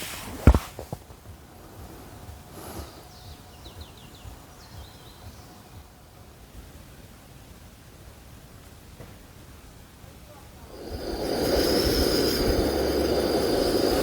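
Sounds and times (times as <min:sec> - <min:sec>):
faint bird chirps: 0:02.0 - 0:06.0.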